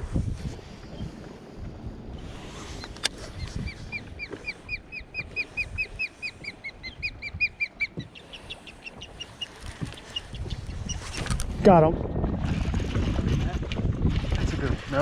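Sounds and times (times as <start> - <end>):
bird calling repeated notes: 3.2 - 11.2.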